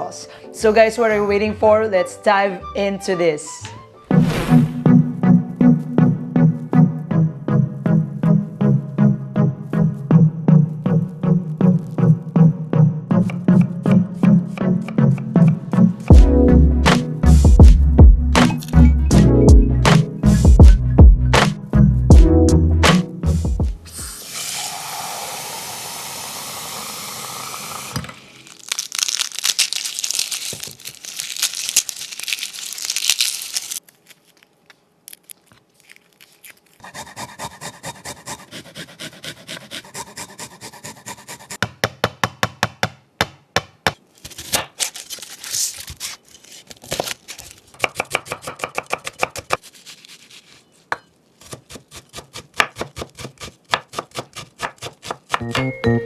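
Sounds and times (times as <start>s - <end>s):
rustling handling: 28.6s - 36.8s, 44.2s - 47.7s
knife chopping on cutting board: 47.8s - 49.6s, 50.9s - 55.7s.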